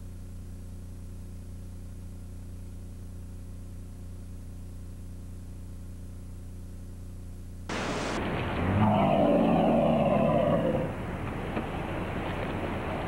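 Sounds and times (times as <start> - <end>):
steady low hum: 0.0 - 13.0
sudden rush of noise: 7.7 - 11.1.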